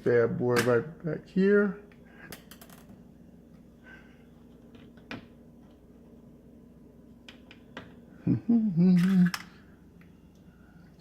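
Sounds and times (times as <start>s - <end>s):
low steady hum: 0.0s - 11.0s
small parts clicking and tapping: 2.3s - 3.0s.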